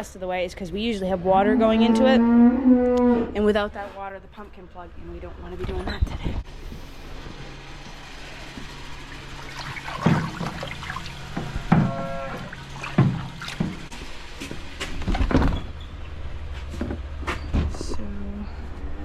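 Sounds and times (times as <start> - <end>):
machine hum: 0.0 - 19.0
equipment clanking and knocking: 9.6 - 15.7.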